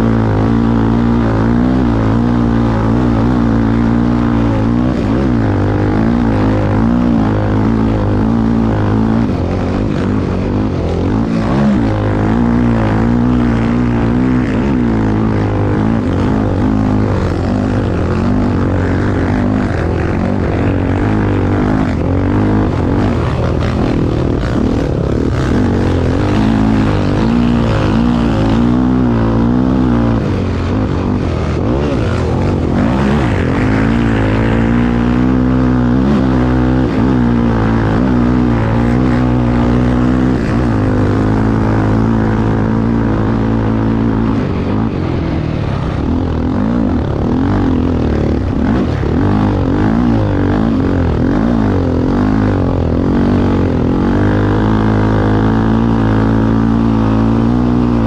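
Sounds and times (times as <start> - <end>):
race engine running under load: 0.0 - 58.0.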